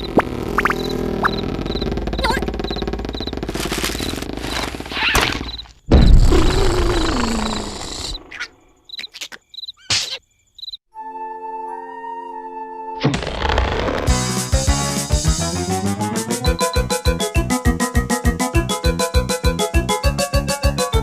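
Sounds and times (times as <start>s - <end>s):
crickets chirping: 0.0s - 10.8s.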